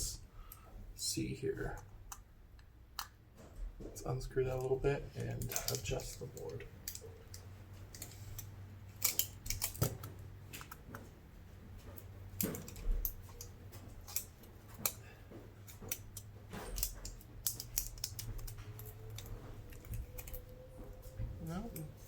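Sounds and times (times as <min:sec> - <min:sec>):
screwdriver clicking on plastic: 0:15.7 - 0:20.4.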